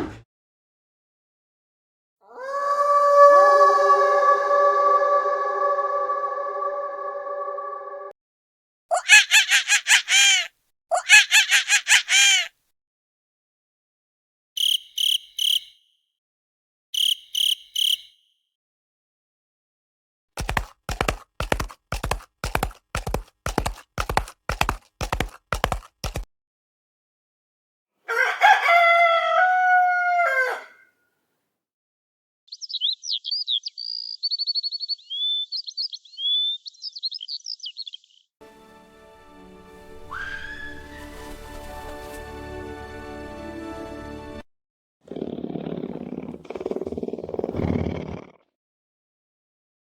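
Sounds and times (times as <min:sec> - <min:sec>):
rooster crowing: 0:02.3 - 0:07.7, 0:28.1 - 0:30.9
cartoon monkey chattering: 0:08.9 - 0:12.5
cricket chirps: 0:14.6 - 0:16.0, 0:17.0 - 0:18.4
small birds chirping: 0:32.5 - 0:38.4.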